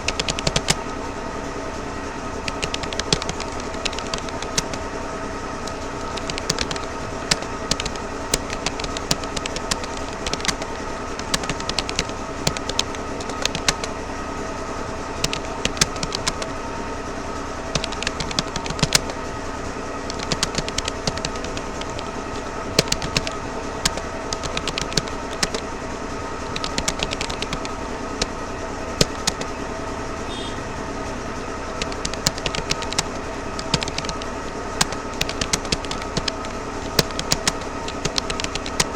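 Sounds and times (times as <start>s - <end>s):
keyboard keystroke clicks: 0.0s - 0.9s, 2.5s - 4.9s, 5.6s - 13.9s, 15.2s - 16.5s, 17.7s - 19.2s, 20.1s - 25.6s, 26.5s - 28.4s, 29.0s - 29.5s, 31.8s - 38.9s
steady tonal hum: 0.0s - 38.9s.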